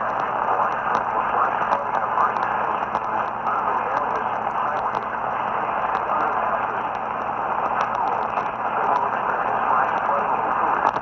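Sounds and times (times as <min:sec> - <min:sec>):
radio static hiss: 0:00.0 - 0:11.0
static crackles: 0:00.0 - 0:11.0.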